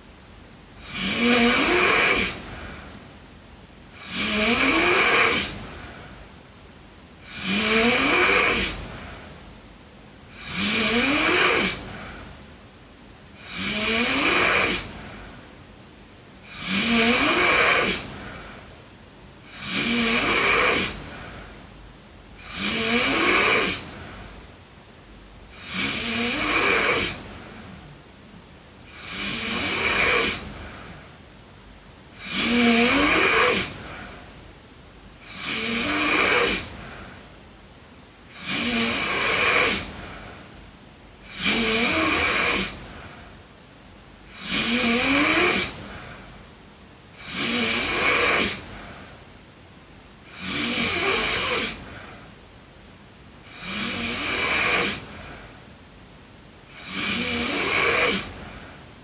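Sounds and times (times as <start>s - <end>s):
quiet breathing: 0.0s - 59.0s
girl snoring: 0.8s - 3.0s, 4.0s - 6.2s, 7.2s - 9.4s, 10.3s - 12.4s, 13.3s - 15.5s, 16.4s - 18.7s, 19.4s - 21.6s, 22.4s - 24.4s, 25.5s - 27.9s, 28.8s - 31.2s, 32.1s - 34.4s, 35.1s - 37.3s, 38.3s - 40.5s, 41.2s - 43.4s, 44.2s - 46.4s, 47.1s - 49.2s, 50.2s - 52.3s, 53.4s - 55.6s, 56.6s - 58.8s.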